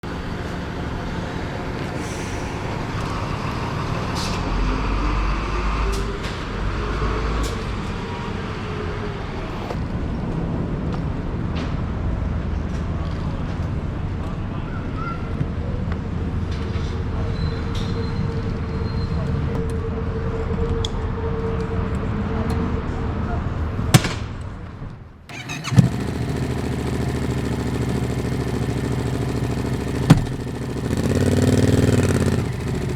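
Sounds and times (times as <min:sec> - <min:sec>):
road noise: 0:00.0 - 0:32.9
vehicle engine running: 0:25.3 - 0:32.9.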